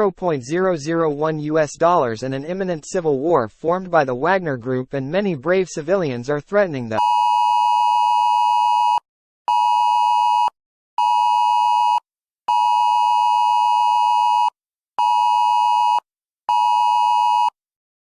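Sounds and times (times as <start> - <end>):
emergency alert beep tone: 7.0 - 17.6.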